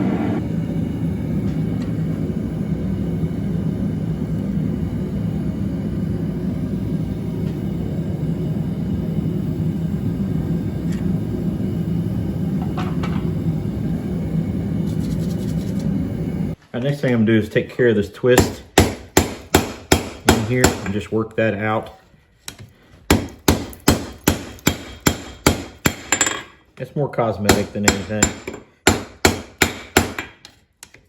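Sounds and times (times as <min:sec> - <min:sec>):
forge rushing: 0:00.0 - 0:00.4.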